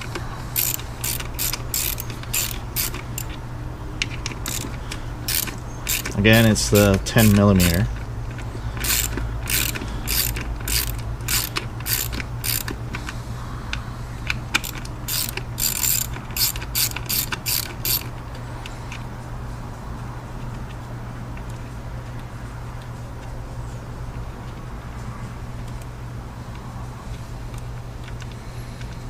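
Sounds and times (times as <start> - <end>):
socket ratchet clicking: 0.0 - 3.4, 4.0 - 12.9, 14.3 - 18.1
steady low hum: 0.0 - 29.0.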